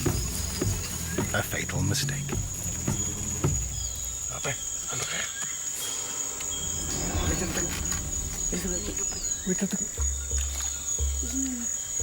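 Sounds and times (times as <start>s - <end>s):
insects droning: 0.0s - 12.0s
low background rumble: 6.0s - 11.4s.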